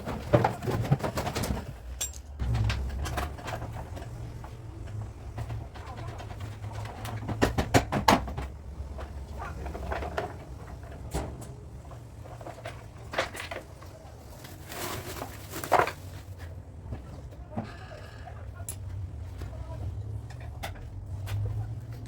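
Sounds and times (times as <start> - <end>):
scraping rustle: 12.2 - 16.6.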